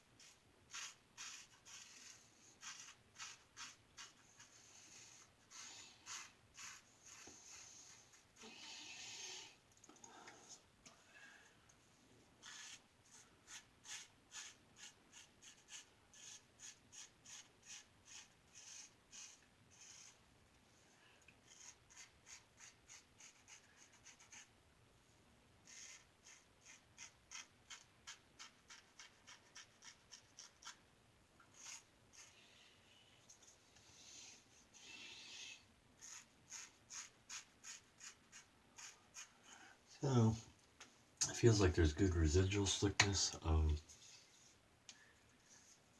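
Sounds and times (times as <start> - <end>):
soft scratchy hiss: 0.0 - 45.9
razor scraping across face: 0.2 - 8.5, 12.4 - 20.2, 21.4 - 24.5, 25.6 - 30.8, 31.5 - 32.4, 36.0 - 39.4.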